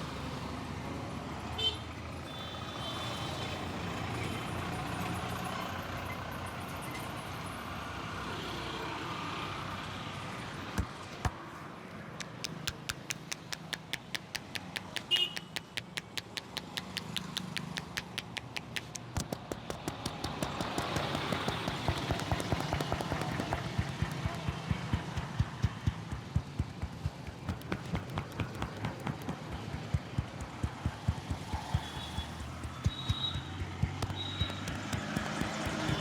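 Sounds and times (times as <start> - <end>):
street traffic noise: 0.0 - 36.0
hands slapping skin: 12.2 - 36.0.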